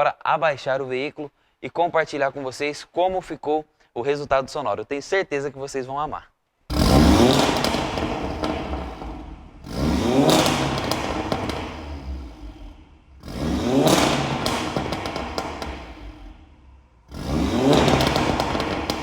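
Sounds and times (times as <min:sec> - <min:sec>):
exhaust crackles: 0:06.7 - 0:19.0
turbocharged engine revving: 0:06.7 - 0:19.0.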